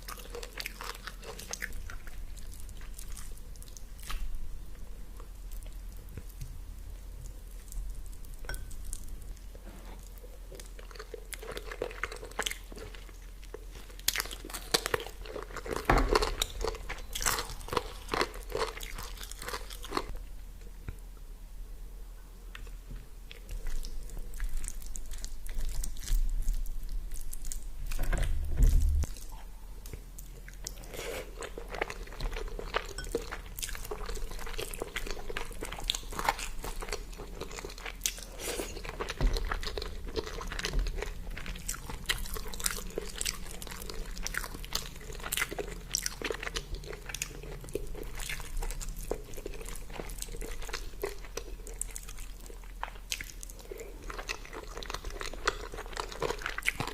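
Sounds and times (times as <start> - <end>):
person chewing crunchy food: 0.0 - 4.3, 5.1 - 20.2, 22.6 - 28.0, 28.7 - 56.9
low thump: 27.9 - 29.1.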